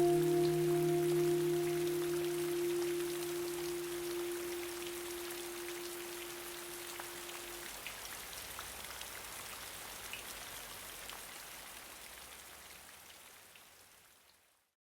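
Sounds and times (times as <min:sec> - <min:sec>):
held guitar note: 0:00.0 - 0:07.4
steady rain: 0:00.0 - 0:14.7.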